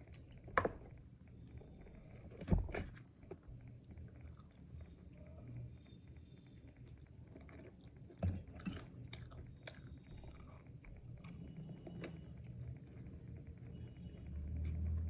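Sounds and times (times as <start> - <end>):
chewing and biting food: 7.3 - 12.4.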